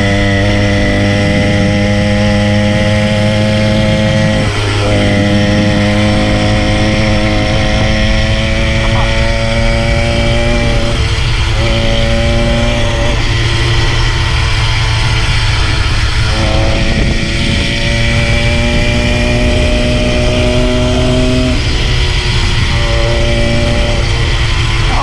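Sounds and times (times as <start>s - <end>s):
small motorbike engine running: 0.0s - 25.0s.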